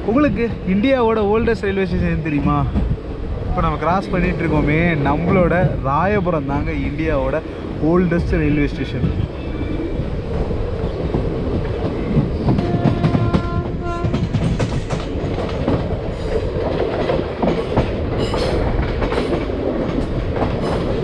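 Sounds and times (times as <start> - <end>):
train wheels clacking over rail joints: 11.1 - 21.0
train horn: 12.6 - 14.3.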